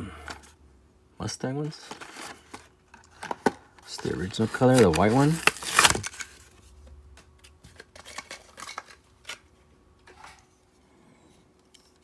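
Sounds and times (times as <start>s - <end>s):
plastic blister pack crackling: 3.8s - 6.4s.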